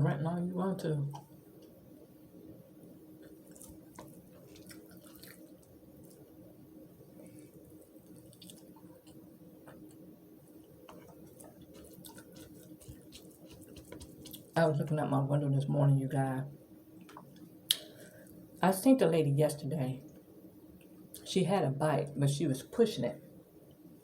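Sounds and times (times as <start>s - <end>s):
steady low hum: 0.0s - 24.0s
small wet clicks: 3.2s - 6.2s, 7.8s - 10.0s, 10.9s - 14.5s
person chewing: 3.2s - 6.3s, 7.4s - 10.0s, 10.9s - 14.6s.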